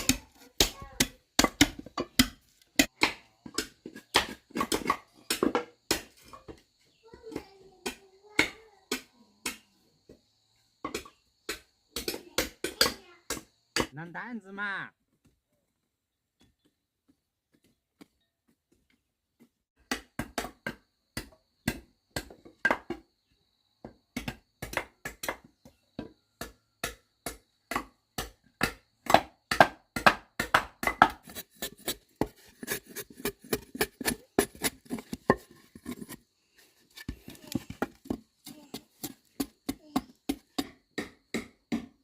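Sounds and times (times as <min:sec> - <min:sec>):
hand tool striking wood: 0:00.0 - 0:06.6, 0:24.2 - 0:42.0.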